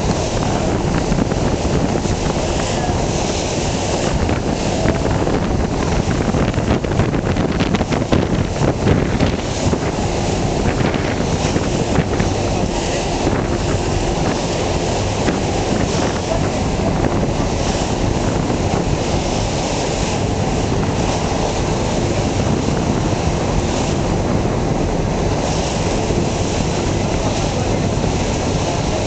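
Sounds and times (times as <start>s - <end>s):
motorboat engine: 0.0s - 29.0s
rushing water: 0.0s - 29.0s
wind buffeting microphone: 0.0s - 29.0s.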